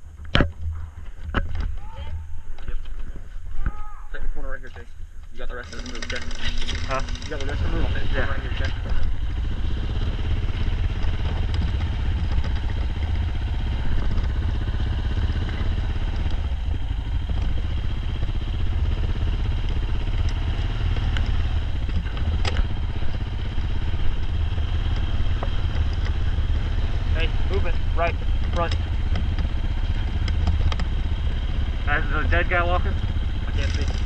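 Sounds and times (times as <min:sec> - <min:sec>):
vehicle engine rumble: 0:00.0 - 0:34.0
light rattles: 0:04.5 - 0:17.8, 0:32.7 - 0:34.0.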